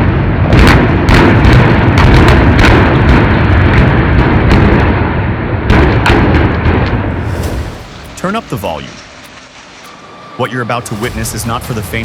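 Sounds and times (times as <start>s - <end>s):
low rumble of collapsing debris: 0.0s - 9.9s
sharp demolition explosions: 0.0s - 9.9s, 10.9s - 12.0s.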